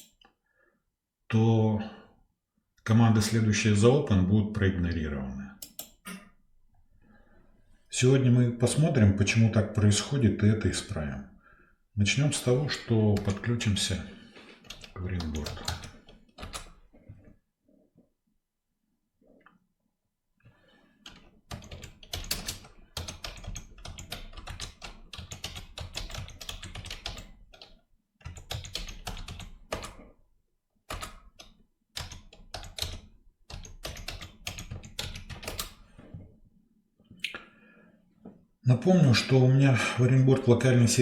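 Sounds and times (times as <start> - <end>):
typing on a computer keyboard: 14.6 - 16.8, 21.0 - 30.2, 30.9 - 35.9.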